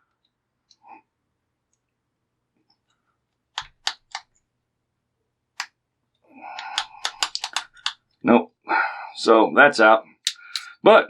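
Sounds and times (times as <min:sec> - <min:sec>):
padlock sharp clicks: 0:03.6 - 0:04.3, 0:06.6 - 0:08.0, 0:10.3 - 0:10.7.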